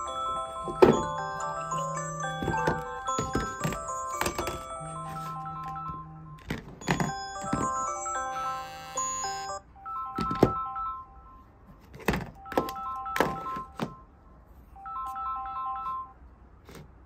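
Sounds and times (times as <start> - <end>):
electronic ringtone melody: 0.0 - 11.5, 12.4 - 14.1, 14.8 - 16.2.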